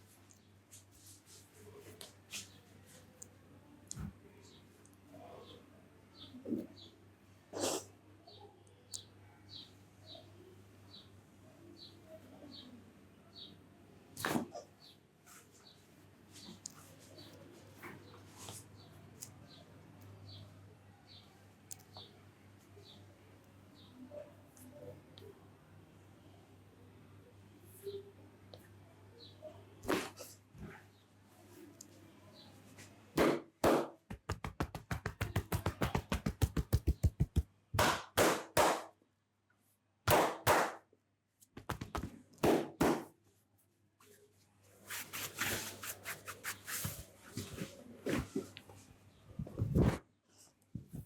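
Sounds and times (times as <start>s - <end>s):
fast chopping taps: 33.2s - 38.8s, 41.6s - 43.0s
hands slapping head: 33.2s - 39.0s, 40.1s - 40.8s, 41.5s - 43.1s.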